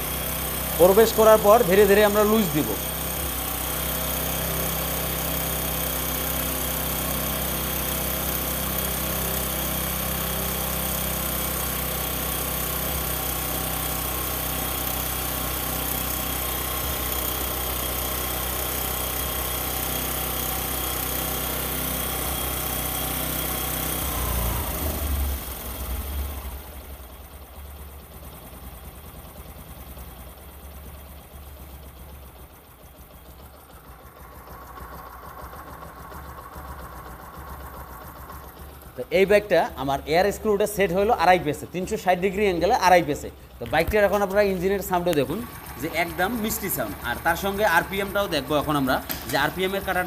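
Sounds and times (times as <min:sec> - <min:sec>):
motorcycle engine at raised revs: 0:00.0 - 0:50.0.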